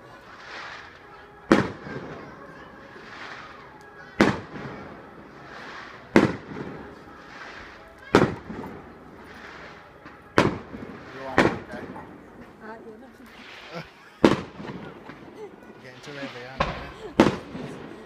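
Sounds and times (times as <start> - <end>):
firework shells bursting: 13.3 - 15.4, 16.1 - 17.9.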